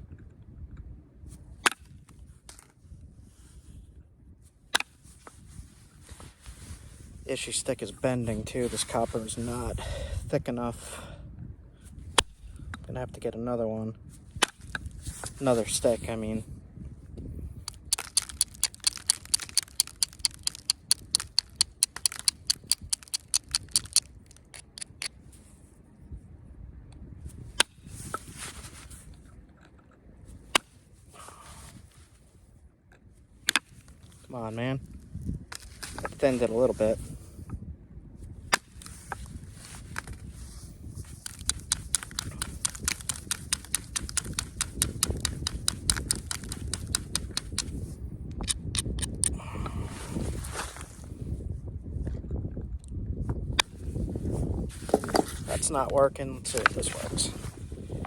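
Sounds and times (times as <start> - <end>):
flint knapping clicks: 14.4 - 16.0, 17.6 - 25.2, 35.5 - 36.6, 38.5 - 40.3, 40.9 - 49.4, 54.8 - 55.8, 56.5 - 58.0.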